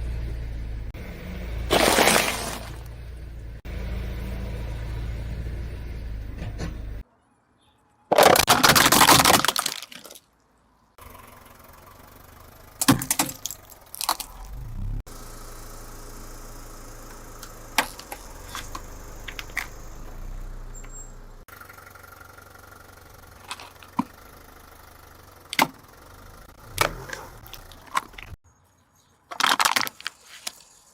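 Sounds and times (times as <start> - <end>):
low engine hum: 0.0 - 7.0, 13.4 - 28.4
tyre crushing brittle objects: 1.7 - 2.9, 8.1 - 10.3, 12.8 - 14.5, 29.3 - 30.9.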